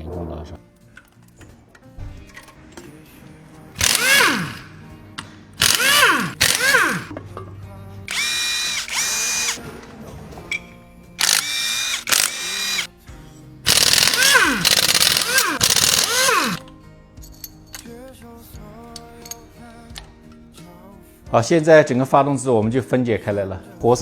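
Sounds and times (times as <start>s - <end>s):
power tool motor whine: 3.8s - 4.8s, 5.6s - 7.1s, 8.1s - 9.6s, 11.2s - 12.9s, 13.7s - 16.6s.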